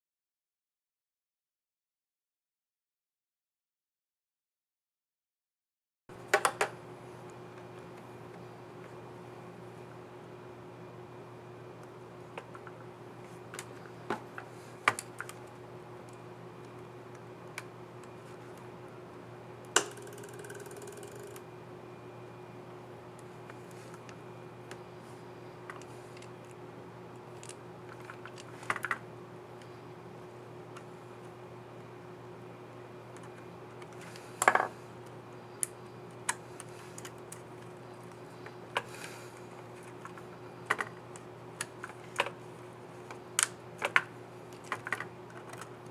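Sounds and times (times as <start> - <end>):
faint hum: 6.1 - 45.9
laptop keys clicking: 19.8 - 21.4.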